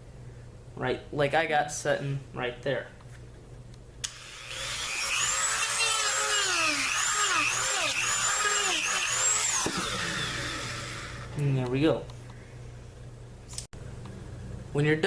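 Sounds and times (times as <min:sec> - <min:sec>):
rotary tool sanding plastic: 0:04.2 - 0:11.4.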